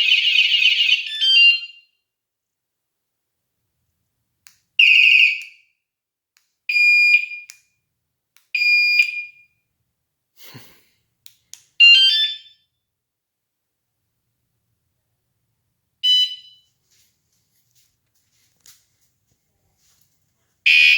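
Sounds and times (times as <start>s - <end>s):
electronic bicycle alarm: 0.0s - 2.0s, 8.6s - 9.6s, 11.8s - 12.7s, 16.0s - 16.7s, 20.7s - 20.9s.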